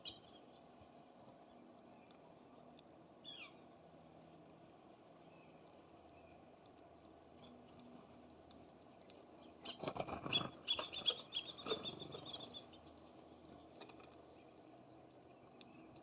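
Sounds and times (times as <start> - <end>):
birds scratching and tapping: 5.6 - 16.0.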